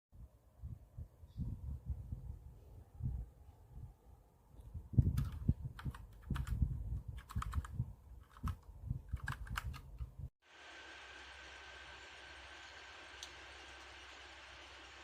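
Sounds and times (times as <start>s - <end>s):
mechanical keyboard typing: 5.0s - 10.1s
steady hiss: 10.4s - 15.0s.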